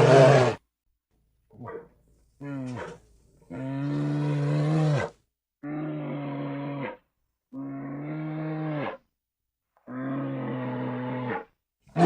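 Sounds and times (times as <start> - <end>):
bear roaring: 0.0 - 0.6.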